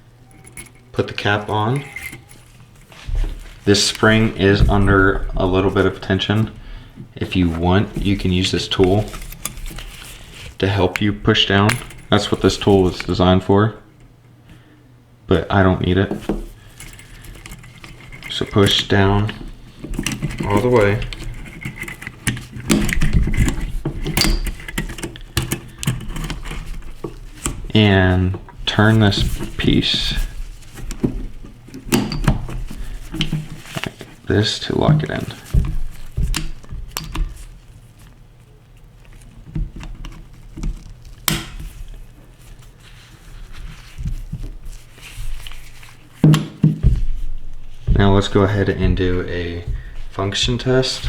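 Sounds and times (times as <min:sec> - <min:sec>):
soft rustles: 0:00.0 - 0:14.8, 0:15.9 - 0:51.0
metal clicks and scraping: 0:00.2 - 0:06.5, 0:08.0 - 0:13.2, 0:16.2 - 0:37.6
small metal clicks and knocks: 0:16.2 - 0:27.8.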